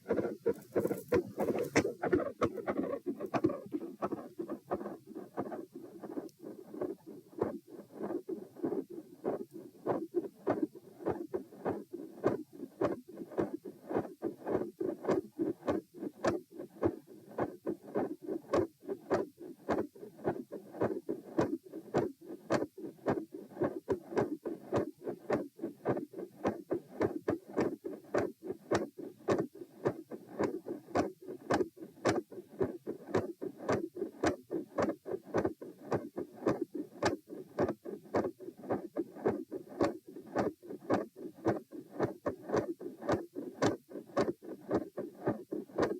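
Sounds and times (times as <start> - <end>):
heartbeat through stethoscope: 0.0 - 45.9.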